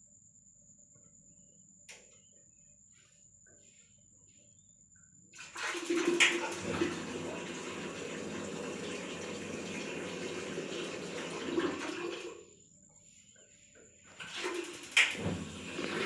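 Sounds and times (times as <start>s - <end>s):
water running from a tap: 5.4s - 12.4s, 14.2s - 16.0s.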